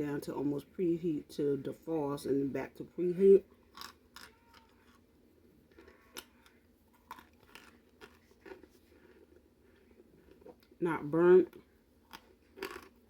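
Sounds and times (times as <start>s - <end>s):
person crunching and chewing: 3.6s - 10.8s, 11.6s - 13.0s.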